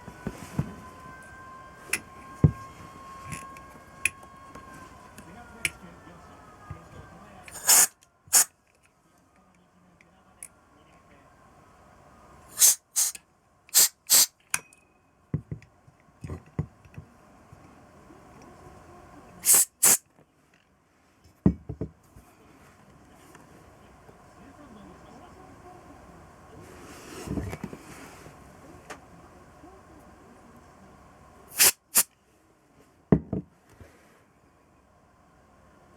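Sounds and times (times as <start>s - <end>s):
nozzle hissing blasts: 7.5s - 8.5s, 12.5s - 14.3s, 19.4s - 20.0s, 31.5s - 32.1s.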